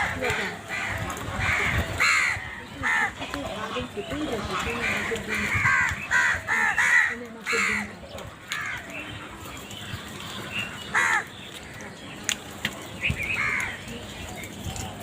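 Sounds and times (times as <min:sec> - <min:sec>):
crow cawing: 0:00.0 - 0:09.0, 0:10.6 - 0:11.9, 0:13.3 - 0:13.9.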